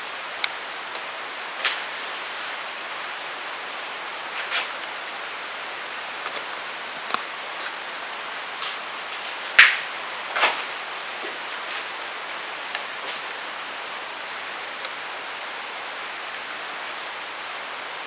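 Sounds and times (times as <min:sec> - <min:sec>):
steady hiss: 0:00.0 - 0:18.0.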